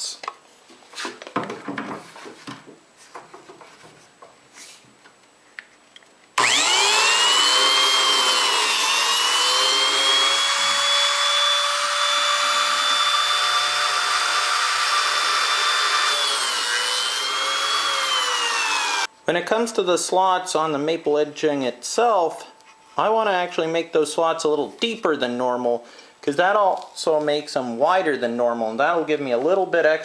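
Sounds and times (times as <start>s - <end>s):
biscuit joiner motor whine: 6.4s - 19.1s.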